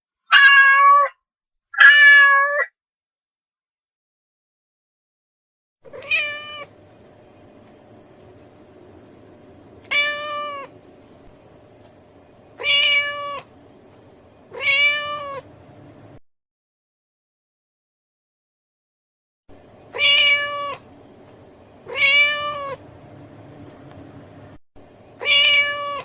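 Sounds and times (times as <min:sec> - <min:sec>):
cat meowing: 0:00.3 - 0:01.2, 0:01.8 - 0:02.8, 0:05.9 - 0:06.7, 0:09.9 - 0:10.7, 0:12.6 - 0:13.5, 0:14.5 - 0:15.5, 0:19.9 - 0:20.8, 0:21.9 - 0:22.8, 0:25.2 - 0:26.0.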